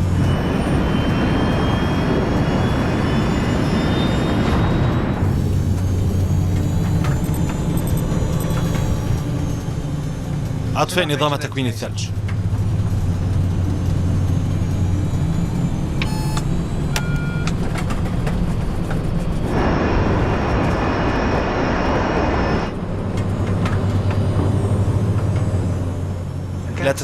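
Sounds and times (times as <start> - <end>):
airliner cockpit drone: 0.0 - 27.0
short electronic tones: 16.0 - 17.5
loud rushing noise: 18.1 - 23.6.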